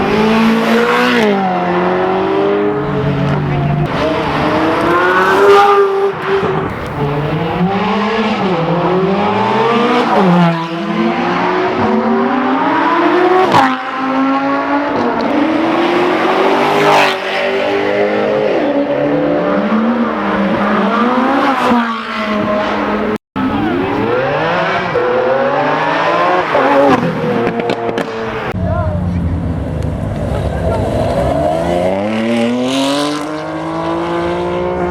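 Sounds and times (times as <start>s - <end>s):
car engines accelerating: 0.0s - 34.9s.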